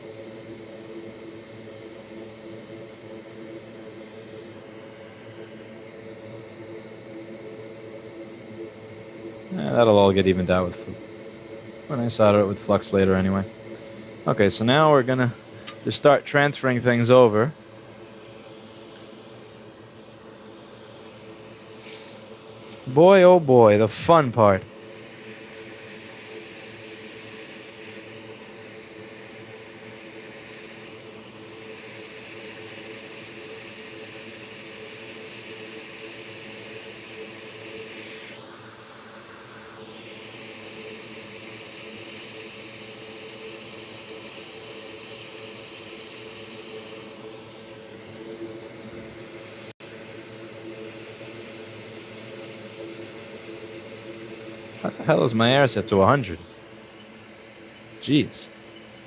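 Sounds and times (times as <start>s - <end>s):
hot air station blowing: 1.2s - 59.0s
fan hum: 8.8s - 33.6s, 46.2s - 58.8s.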